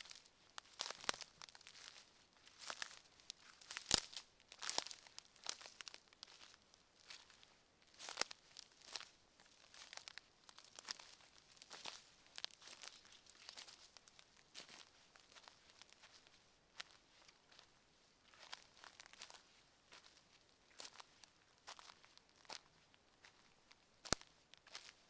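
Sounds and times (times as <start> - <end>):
footsteps on forest floor: 0.0 - 7.4, 9.7 - 16.2.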